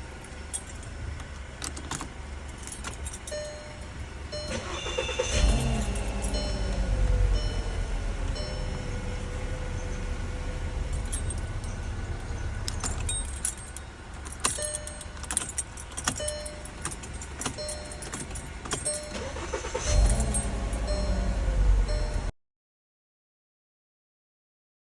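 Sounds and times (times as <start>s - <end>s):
car keys jangling in ignition: 0.0s - 10.0s, 10.7s - 22.3s
short beeps: 4.4s - 7.8s.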